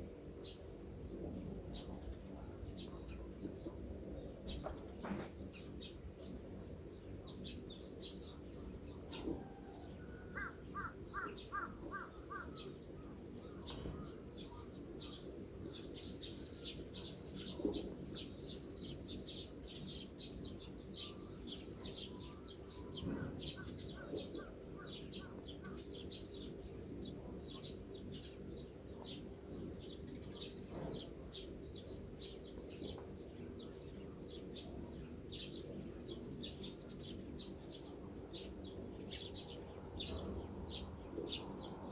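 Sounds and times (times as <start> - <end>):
birds chirping: 0.4 - 41.9
repeated lower bird calls: 7.0 - 41.9.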